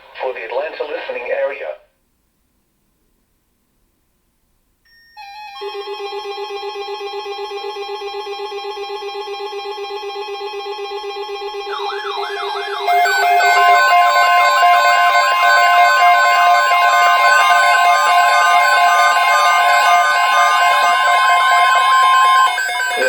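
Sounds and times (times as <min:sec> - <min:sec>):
warbling siren-like sweeps: 0:11.0 - 0:23.0
steady electronic beeps: 0:11.2 - 0:23.0.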